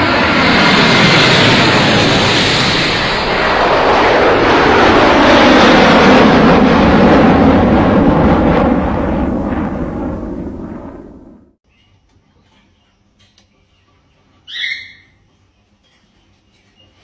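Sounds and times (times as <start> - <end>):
aircraft roaring overhead: 0.0 - 11.6.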